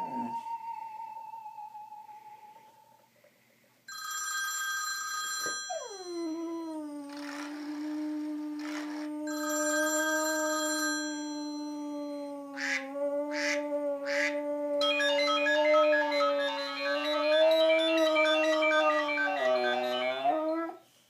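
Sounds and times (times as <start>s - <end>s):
phone ringtone: 3.9s - 6.2s, 9.3s - 11.6s, 14.8s - 15.6s
pet howling: 5.7s - 20.8s.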